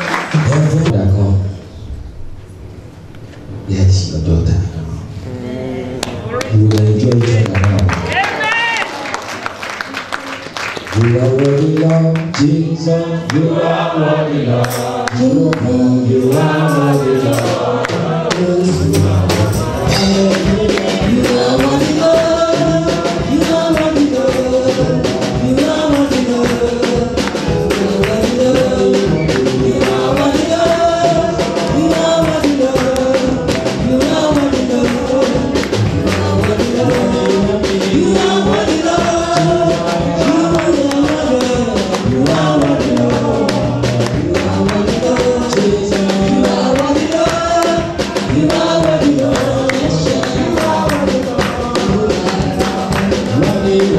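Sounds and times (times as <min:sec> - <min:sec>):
band playing: 0:00.0 - 0:53.9
choir and congregation singing: 0:09.0 - 0:53.9
tambourine beat: 0:14.6 - 0:53.9.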